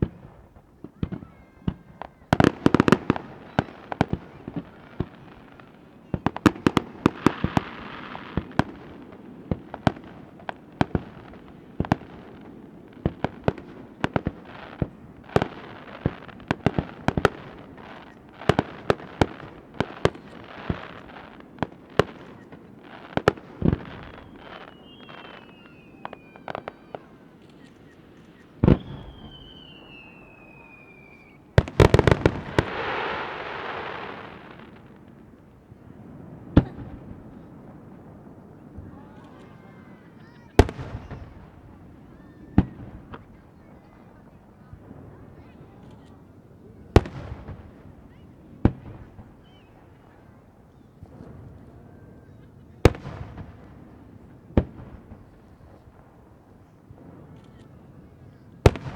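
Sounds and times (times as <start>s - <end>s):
fireworks bangs and crackles: 0.0s - 58.9s
falling firework whistle: 23.6s - 34.8s.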